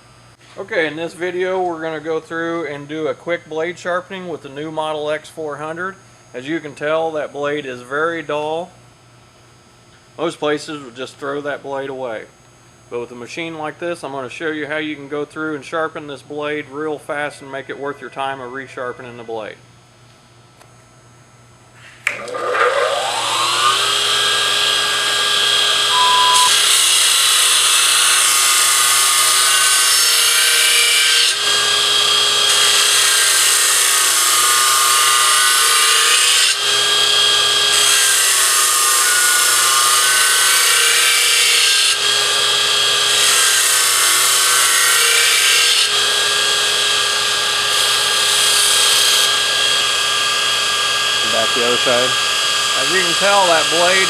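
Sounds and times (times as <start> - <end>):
belt grinder motor whine: 22.0 - 54.0
steel grinding on abrasive belt: 22.2 - 54.0.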